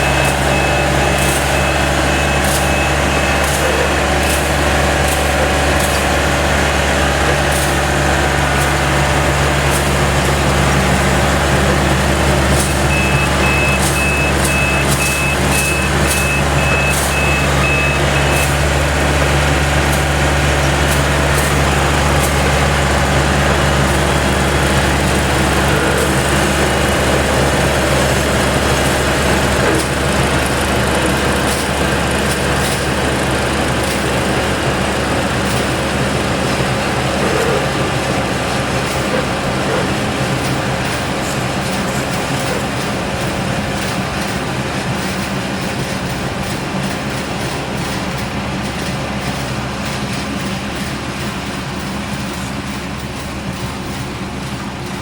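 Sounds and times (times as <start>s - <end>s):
high warning beep: 0.0s - 3.9s, 12.7s - 18.7s
combine harvester engine running: 0.0s - 55.0s.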